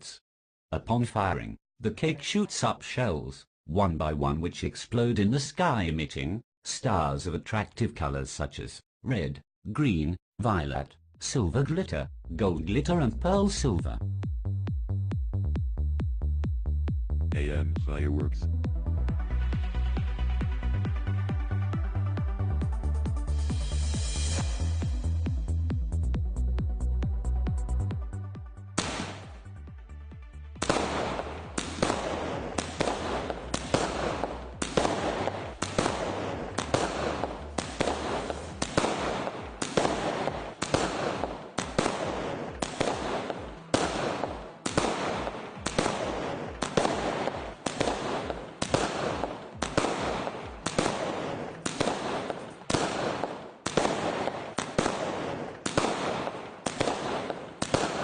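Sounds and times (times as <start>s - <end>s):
music: 12.2s - 39.6s, 41.9s - 52.1s
fireworks bangs: 28.8s - 29.5s, 30.6s - 58.0s.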